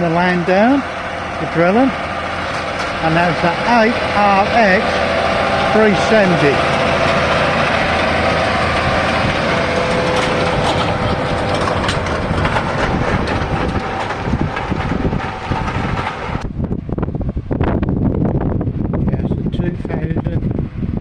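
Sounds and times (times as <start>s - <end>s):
dense rattling clatter: 0.0s - 19.8s
tractor engine drone: 0.0s - 21.0s.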